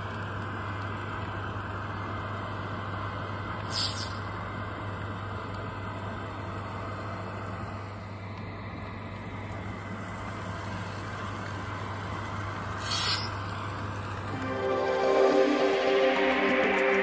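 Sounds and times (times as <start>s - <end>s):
model tram motor hum: 0.0s - 15.8s
short air hiss: 3.7s - 4.2s, 12.8s - 13.4s.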